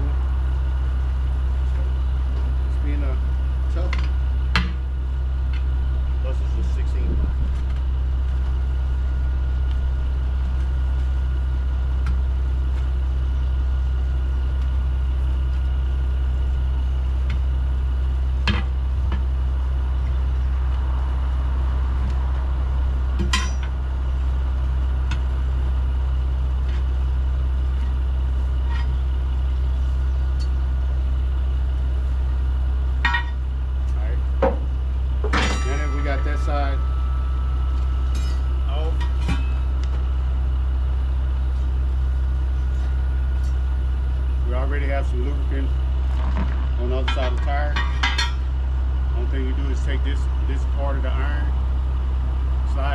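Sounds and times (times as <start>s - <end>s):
idling engine drone: 0.0s - 52.9s
tire irons clinking on wheel rim: 18.4s - 30.7s, 33.0s - 40.2s, 46.0s - 48.6s.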